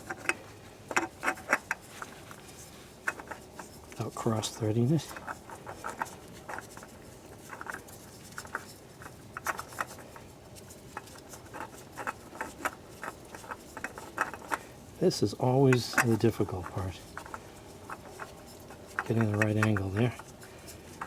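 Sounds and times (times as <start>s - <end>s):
oil filter clicking and scraping: 0.0s - 21.0s.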